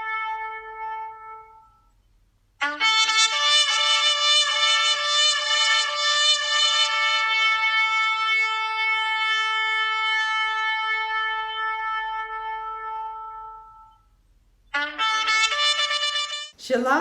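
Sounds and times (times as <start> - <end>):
horn blasts: 2.6 - 14.0, 14.7 - 16.7.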